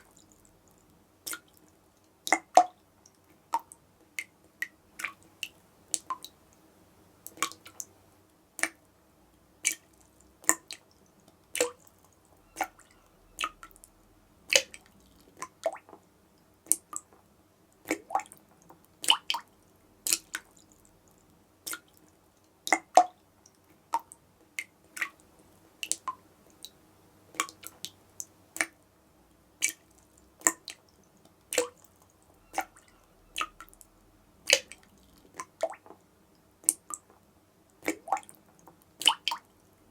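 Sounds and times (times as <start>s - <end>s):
water drops dripping: 0.0s - 6.6s, 7.2s - 7.9s, 9.6s - 13.9s, 14.5s - 16.0s, 19.0s - 22.0s, 22.7s - 28.8s, 29.6s - 33.9s, 34.5s - 36.0s, 37.8s - 39.5s.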